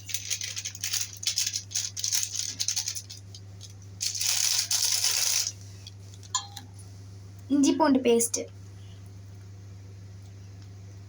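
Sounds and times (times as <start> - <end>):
powder rattling from packet: 0.0 - 5.6.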